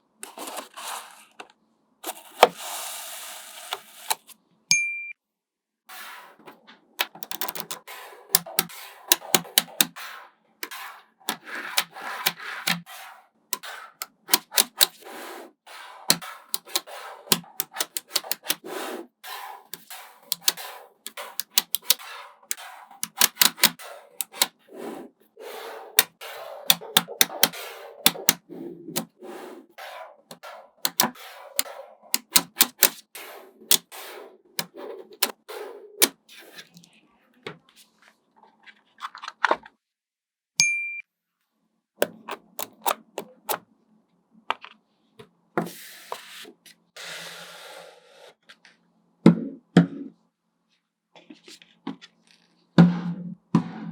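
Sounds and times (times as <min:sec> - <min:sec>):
magnetic balls clicking together: 0:07.0 - 0:10.0, 0:13.6 - 0:15.0, 0:16.1 - 0:18.6, 0:19.8 - 0:24.5, 0:26.0 - 0:29.1, 0:30.3 - 0:33.1.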